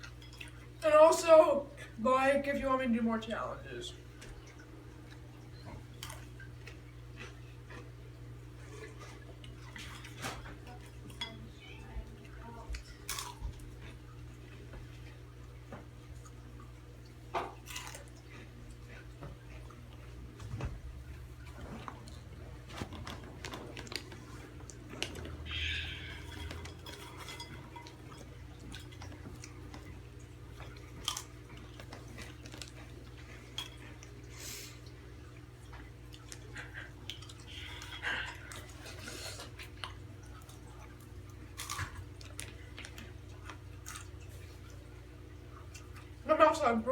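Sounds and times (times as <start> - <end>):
crunchy chips being eaten: 12.8 - 14.0, 17.5 - 19.8, 22.8 - 29.8, 30.6 - 34.1, 37.1 - 44.4.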